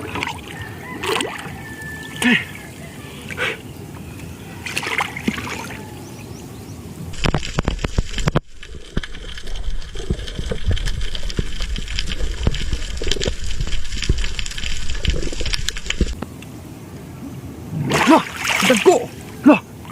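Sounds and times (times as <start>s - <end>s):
seawater sloshing and splashing: 0.0s - 2.6s, 4.6s - 5.9s, 17.8s - 19.9s
muffled underwater rumble: 7.0s - 16.3s
dense crackling clicks: 7.1s - 16.6s.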